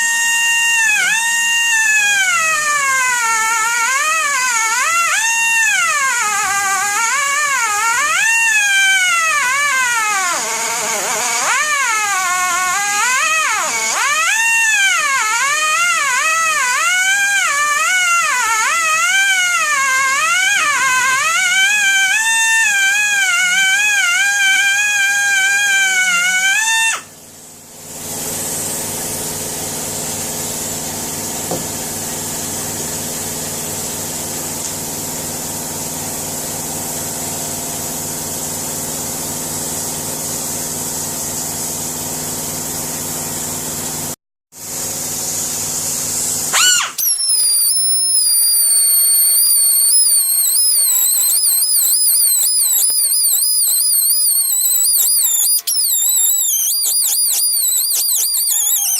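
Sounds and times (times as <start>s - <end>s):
electric power tool running: 0.0s - 18.2s, 46.4s - 58.9s
warbling high-pitched tone: 46.6s - 58.9s.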